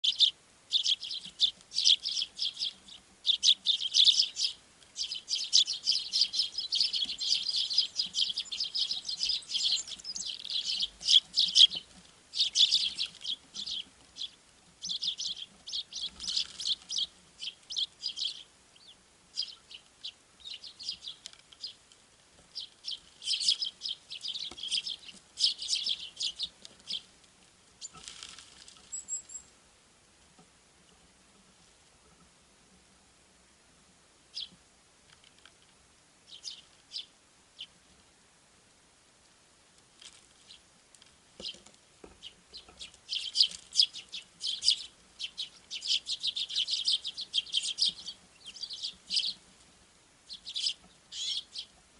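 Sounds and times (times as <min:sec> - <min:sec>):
small songbirds chirping: 0:00.0 - 0:29.6, 0:34.2 - 0:38.0, 0:39.8 - 0:51.9.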